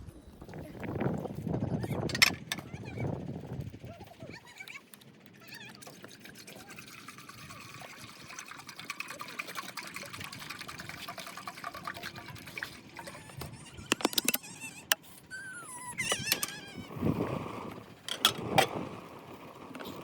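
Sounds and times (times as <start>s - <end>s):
sharp clicks or knocks: 2.1s - 2.6s, 13.9s - 14.4s
liquid pouring into a container: 5.8s - 14.4s.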